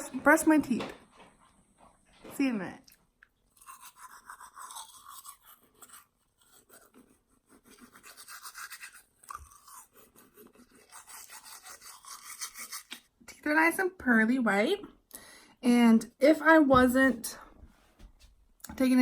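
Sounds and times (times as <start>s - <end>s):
toothbrush scrubbing teeth: 3.5s - 13.1s.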